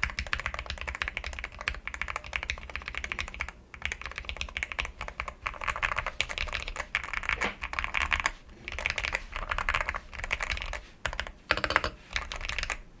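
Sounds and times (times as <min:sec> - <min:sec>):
typing on mechanical keyboard: 0:00.0 - 0:12.8.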